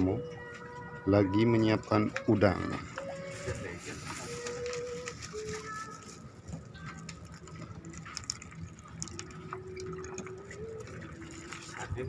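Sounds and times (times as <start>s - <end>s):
water splashing and dripping: 1.8s - 12.0s.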